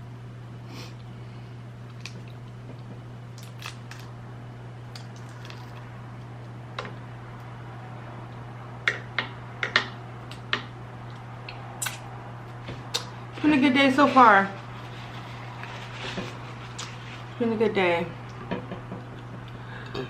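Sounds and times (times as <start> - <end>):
steady low hum: 0.0 - 20.0
wet mouth chewing smacks: 11.1 - 12.1.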